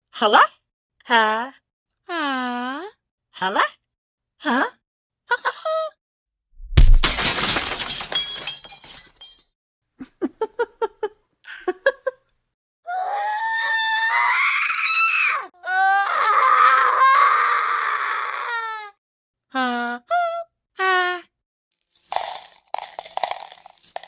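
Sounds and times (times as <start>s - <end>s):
loud crash with shattering: 6.7s - 9.3s
long screams: 12.9s - 19.0s.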